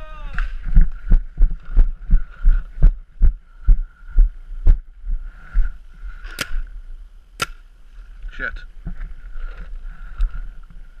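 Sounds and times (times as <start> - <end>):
sharp crack: 6.2 - 6.7, 7.4 - 7.7.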